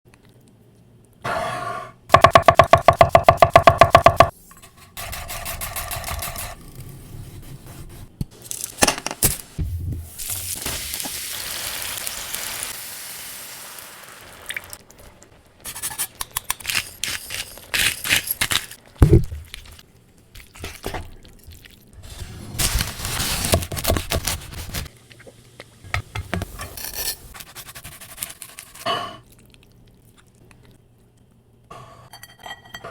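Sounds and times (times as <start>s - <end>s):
utensil scraping and stirring: 4.4s - 8.2s, 26.1s - 29.2s
steady cooking hiss: 9.2s - 14.9s.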